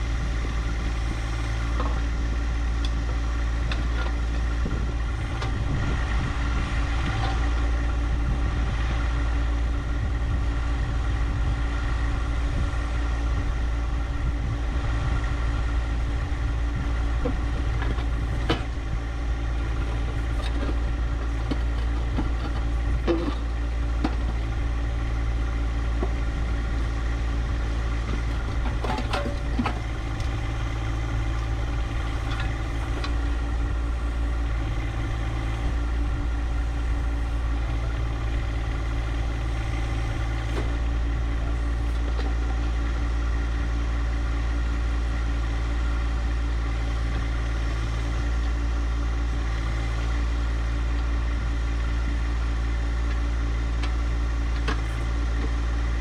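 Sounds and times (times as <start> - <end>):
tractor diesel engine running: 0.0 - 56.0.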